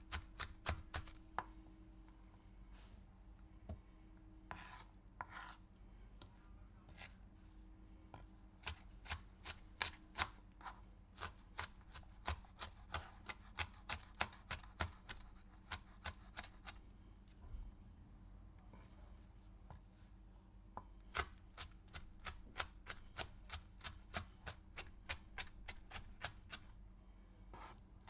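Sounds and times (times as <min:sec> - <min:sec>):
knife chopping on cutting board: 0:00.1 - 0:01.2, 0:08.6 - 0:16.8, 0:21.1 - 0:26.7
knife slicing on cutting board: 0:04.5 - 0:05.6.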